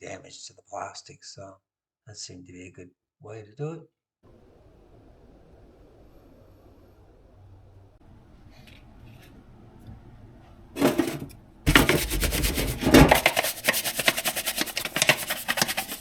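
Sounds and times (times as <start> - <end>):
brush scrubbing plastic: 11.7 - 16.0.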